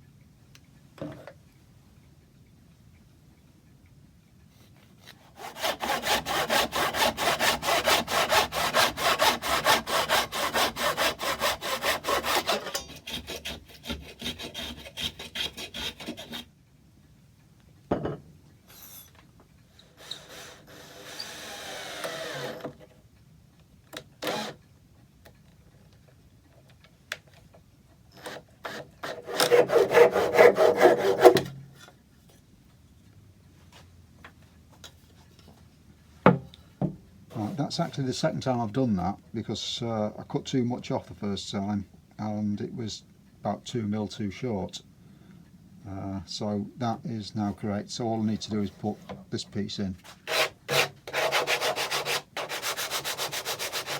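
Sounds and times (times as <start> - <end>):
hand saw cutting wood: 5.0 - 16.5, 19.8 - 22.7, 24.2 - 24.6, 28.2 - 31.6, 50.0 - 53.9.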